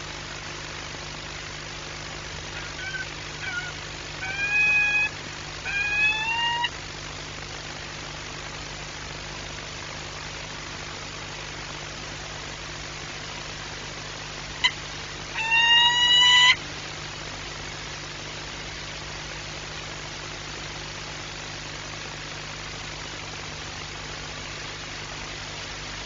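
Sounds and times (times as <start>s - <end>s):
steady hum: 0.0s - 26.0s
falcon wailing call: 2.6s - 6.8s, 14.6s - 16.6s.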